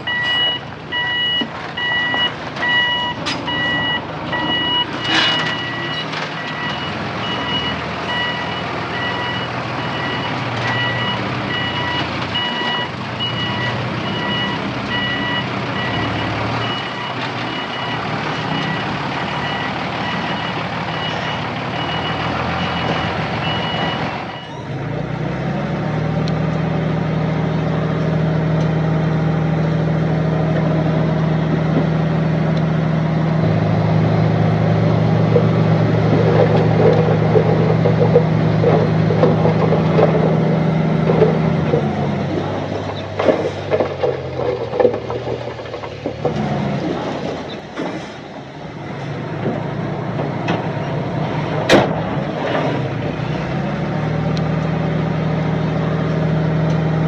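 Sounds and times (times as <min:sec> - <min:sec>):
reversing alarm beeping: 0:00.0 - 0:24.7.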